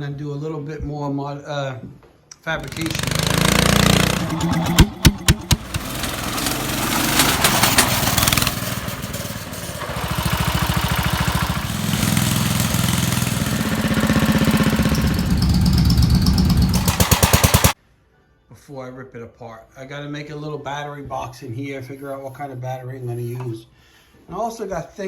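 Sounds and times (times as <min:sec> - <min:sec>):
engine popping: 0:02.6 - 0:17.8
small gasoline engine running: 0:02.6 - 0:17.8.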